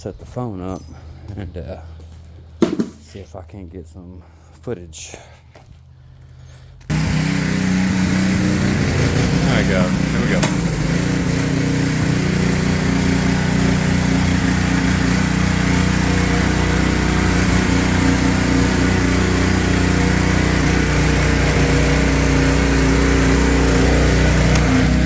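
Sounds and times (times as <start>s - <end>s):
pressure washer engine running: 2.6s - 3.0s, 6.9s - 25.0s.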